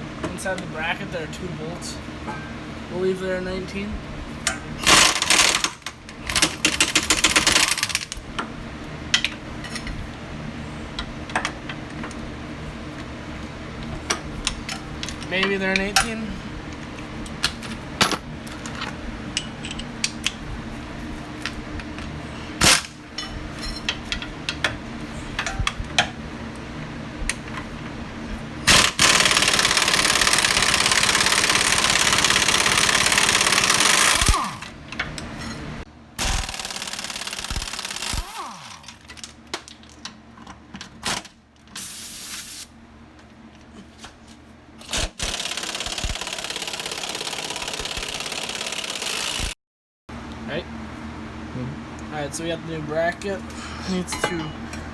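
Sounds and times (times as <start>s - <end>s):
metal tools clinking: 53.9s - 54.9s.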